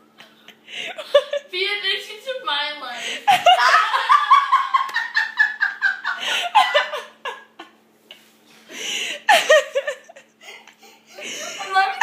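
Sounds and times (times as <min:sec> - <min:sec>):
woman laughing hard: 0:03.2 - 0:07.8, 0:09.0 - 0:12.0.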